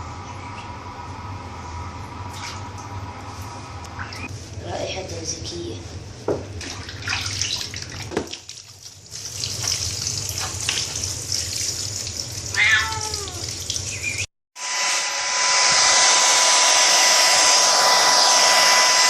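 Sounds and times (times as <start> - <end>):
tap water running: 6.3 - 14.3
cat meowing: 12.5 - 13.6.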